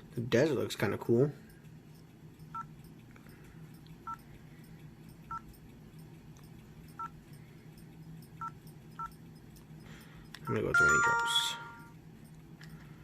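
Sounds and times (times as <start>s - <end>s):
faint low hum: 0.0s - 13.0s
phone keypad beeps: 7.0s - 7.2s, 8.4s - 9.2s, 10.4s - 11.9s.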